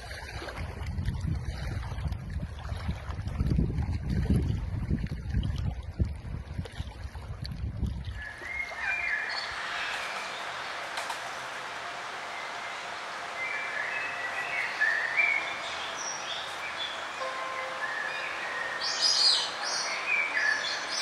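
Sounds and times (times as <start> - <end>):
birds chirping and singing: 8.2 - 21.0
outdoor hiss: 8.7 - 21.0.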